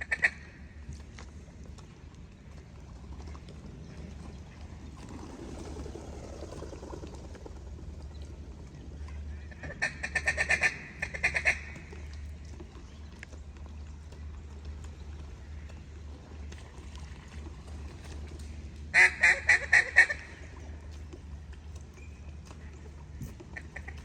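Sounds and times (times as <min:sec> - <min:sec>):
loud duck quacks: 0:00.0 - 0:00.4, 0:09.5 - 0:11.8, 0:19.0 - 0:20.4
distant ducks and geese: 0:00.0 - 0:24.0.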